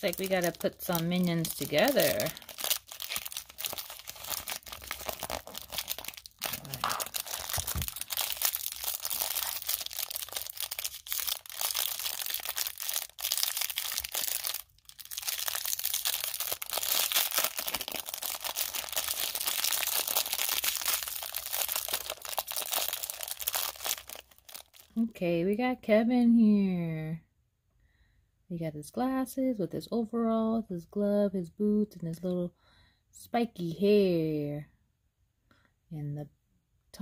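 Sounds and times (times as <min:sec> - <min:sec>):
plastic wrappers crinkling and tearing: 0:00.0 - 0:25.1.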